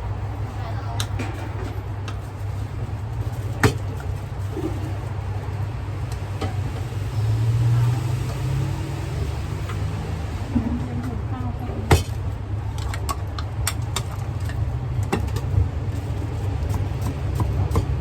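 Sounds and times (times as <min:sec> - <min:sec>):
road traffic rumble: 0:00.0 - 0:18.0
vehicle passing: 0:04.2 - 0:12.4.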